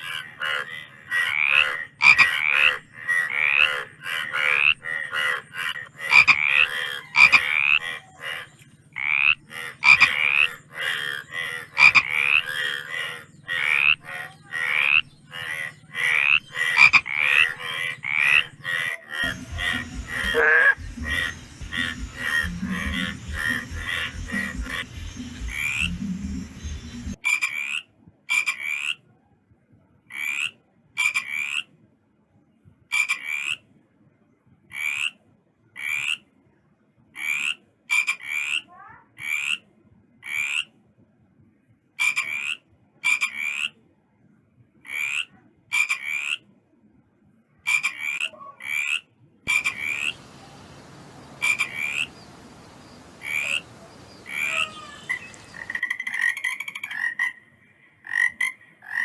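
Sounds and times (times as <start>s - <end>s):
frog croaking: 0.0s - 29.0s, 30.1s - 31.7s, 44.9s - 46.4s, 47.7s - 57.4s, 58.0s - 59.0s
steady background hiss: 19.2s - 27.2s, 49.5s - 55.8s.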